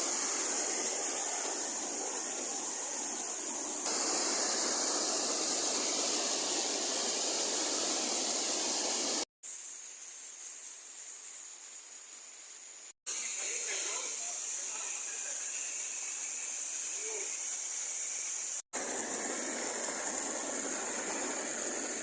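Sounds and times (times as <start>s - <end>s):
rushing water: 0.0s - 9.3s.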